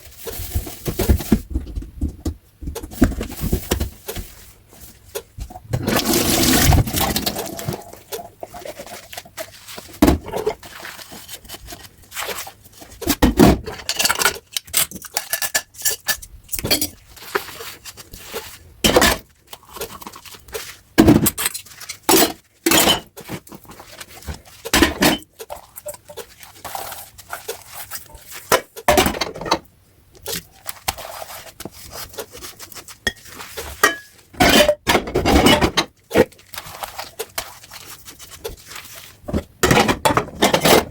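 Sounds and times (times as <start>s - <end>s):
dishes clinking and clattering: 33.1s - 36.0s, 39.3s - 40.9s.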